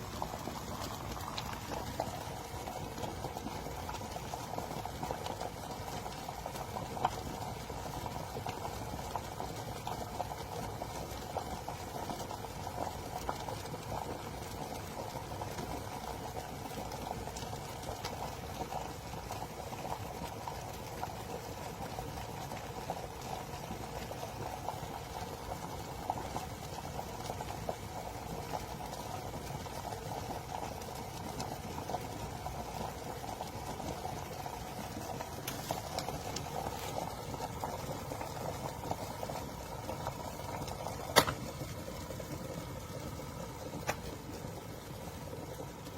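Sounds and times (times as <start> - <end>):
water boiling in electric kettle: 0.0 - 45.9.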